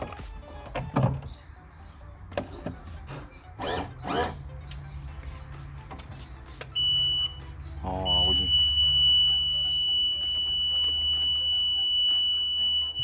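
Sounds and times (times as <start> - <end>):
high warning alarm beep: 6.8 - 13.0.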